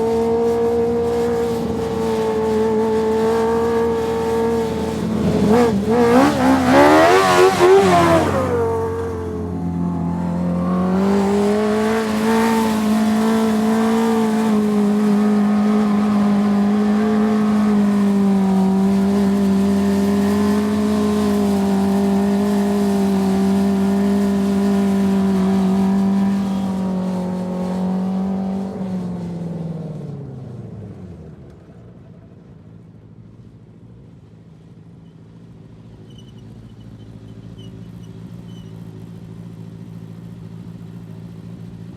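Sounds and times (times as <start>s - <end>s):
race car engine revving: 0.0s - 29.4s.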